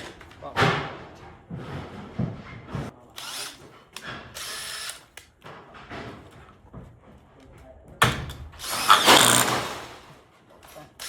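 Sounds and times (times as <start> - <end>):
impact driver driving a screw: 3.2 - 5.3, 8.6 - 9.8.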